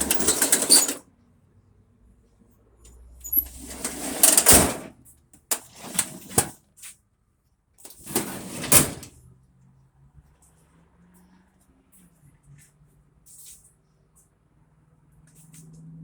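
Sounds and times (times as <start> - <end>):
drawers sliding open and shut: 0.0 - 1.0, 3.3 - 4.9, 5.5 - 6.6, 7.9 - 9.1
parts rattling inside drawers: 0.0 - 1.0, 3.3 - 4.9, 5.5 - 6.6, 7.9 - 9.1.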